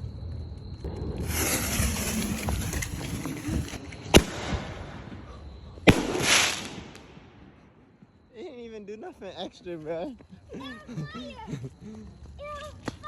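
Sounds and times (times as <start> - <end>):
firework bangs: 0.9 - 7.7
firework hissing: 1.1 - 4.9, 5.9 - 7.0.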